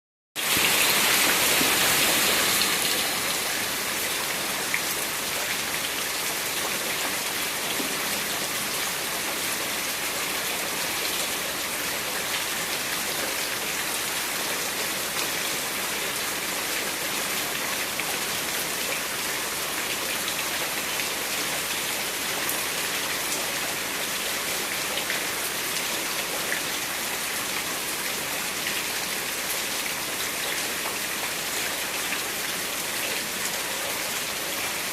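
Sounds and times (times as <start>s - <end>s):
steady rain falling: 0.4s - 34.9s.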